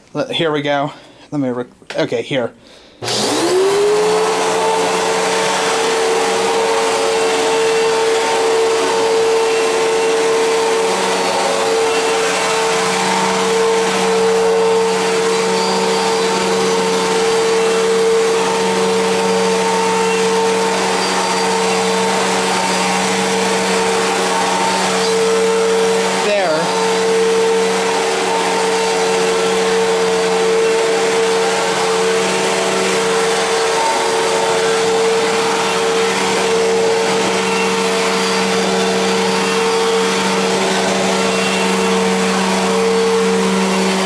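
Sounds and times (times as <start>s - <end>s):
person talking: 0.0s - 2.6s, 26.1s - 26.8s
vacuum cleaner motor whining: 3.0s - 44.0s.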